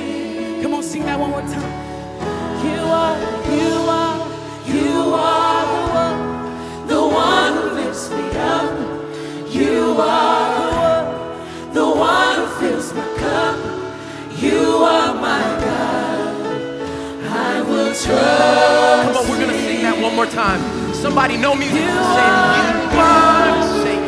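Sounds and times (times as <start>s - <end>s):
worship band and singers: 0.0s - 24.0s
low drum beat: 19.0s - 24.0s.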